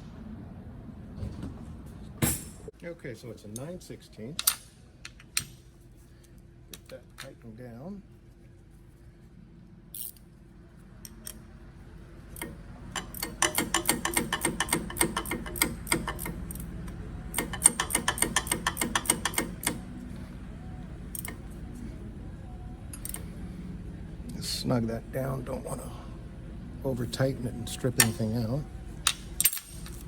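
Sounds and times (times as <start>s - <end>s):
socket ratchet clicking: 12.4s - 16.6s, 17.3s - 19.8s.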